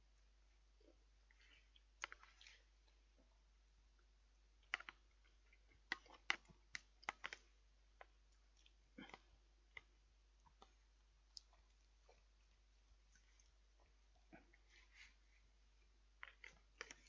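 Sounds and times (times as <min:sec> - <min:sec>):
faint eating clicks: 0:00.8 - 0:03.3, 0:03.9 - 0:17.0.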